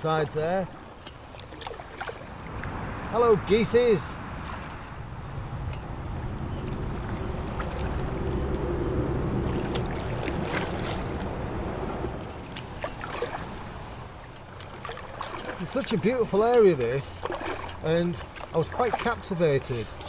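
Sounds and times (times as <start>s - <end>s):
paddle splashes and drips: 0.0s - 3.2s, 4.3s - 5.4s, 6.1s - 11.4s, 12.0s - 20.0s
wind rumble on microphone: 4.1s - 14.3s.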